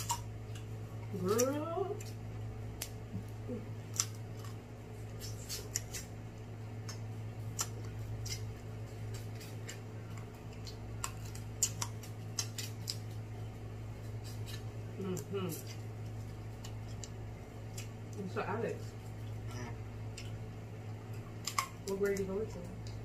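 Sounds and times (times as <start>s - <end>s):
steady low hum: 0.0s - 23.0s
crab shells cracking: 3.8s - 13.3s, 20.0s - 22.2s.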